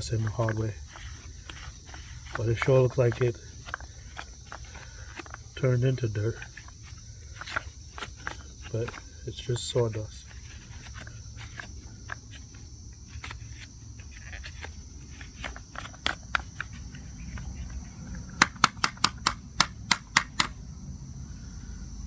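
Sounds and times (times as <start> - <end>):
clicks and knocks clearing sawdust: 0.0 - 20.6
insect drone: 0.0 - 22.0
sharp taps: 18.4 - 20.6.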